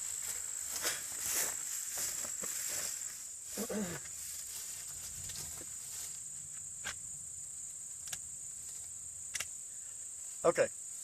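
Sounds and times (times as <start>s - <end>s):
high-pitched insect drone: 0.0s - 11.0s
sharp click: 9.3s - 9.5s.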